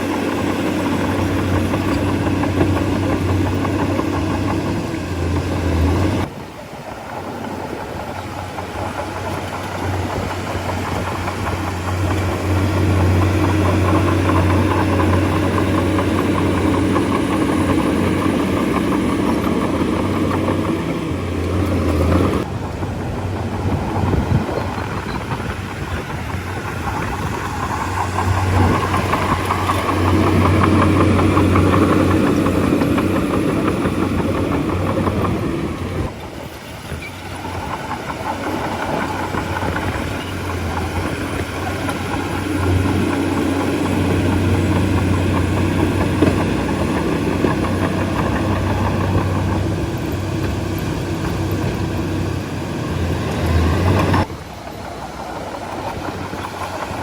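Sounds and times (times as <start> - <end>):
bulldozer diesel engine: 0.0 - 57.0.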